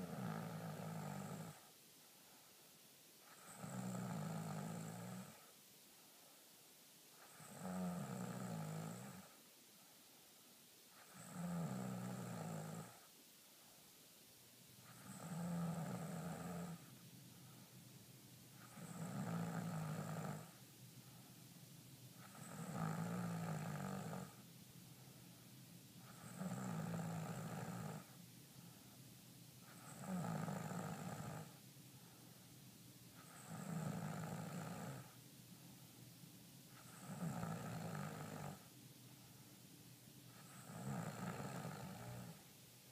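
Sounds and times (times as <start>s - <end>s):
rasping snoring: 0.0s - 1.7s, 3.3s - 5.4s, 7.2s - 9.3s, 11.0s - 13.0s, 14.8s - 16.9s, 18.6s - 20.6s, 22.2s - 24.4s, 26.0s - 28.2s, 29.7s - 31.6s, 33.2s - 35.2s, 36.8s - 38.7s, 40.4s - 42.4s.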